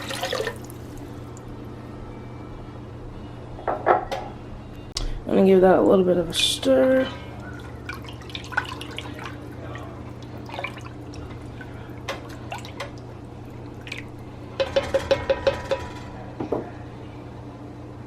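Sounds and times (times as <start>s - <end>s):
broth splashing and dripping: 0.0s - 1.5s, 7.2s - 14.4s.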